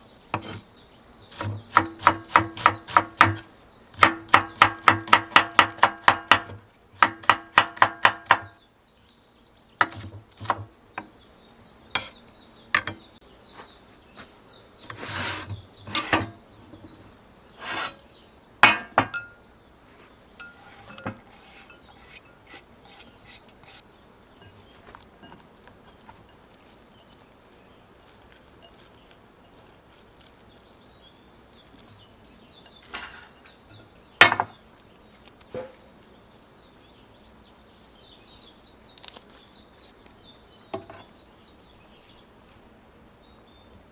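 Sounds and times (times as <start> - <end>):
birds chirping faintly: 0.0 - 43.9
knife chopping on cutting board: 1.3 - 8.5, 9.8 - 10.7
bowls and utensils clinking: 15.0 - 16.4, 18.6 - 19.4, 20.4 - 22.2.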